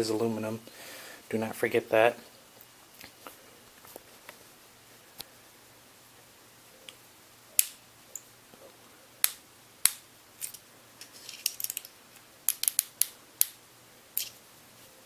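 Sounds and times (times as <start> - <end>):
small metal tools clicking: 11.3 - 11.9, 12.5 - 13.6, 14.2 - 14.4.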